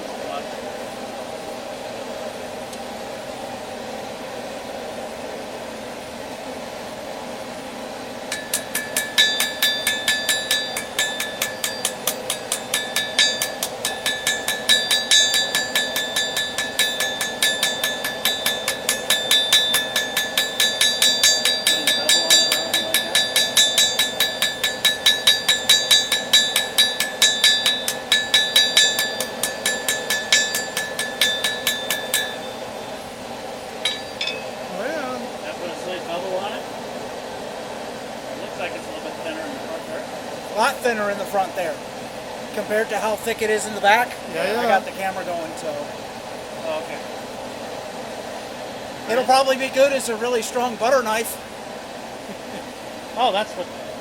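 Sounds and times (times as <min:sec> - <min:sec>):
steady hum: 0:00.0 - 0:54.0
hammer striking steel on anvil: 0:08.3 - 0:32.7, 0:33.8 - 0:34.6.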